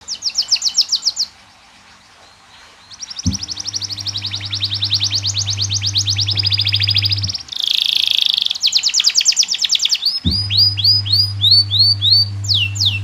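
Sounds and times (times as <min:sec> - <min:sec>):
steady low hum: 0:03.0 - 0:07.6, 0:10.2 - 0:13.0
canary trilling: 0:03.0 - 0:13.0.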